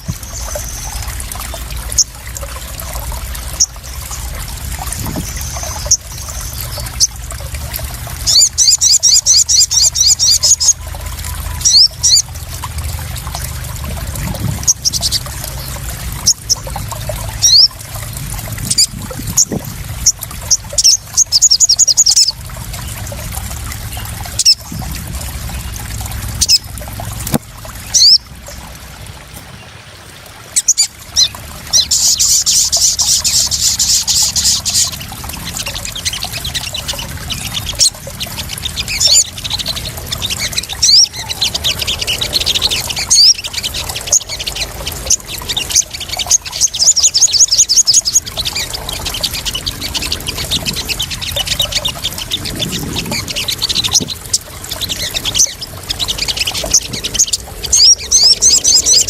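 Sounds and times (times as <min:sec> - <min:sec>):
water trickling and splashing: 0:00.0 - 0:59.0
bird calling with high trills: 0:27.8 - 0:28.3, 0:30.6 - 0:59.0.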